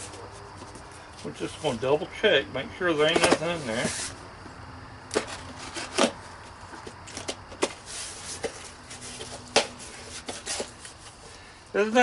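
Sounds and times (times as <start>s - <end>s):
cardboard scraping and rustling: 3.0s - 4.2s, 5.1s - 11.2s.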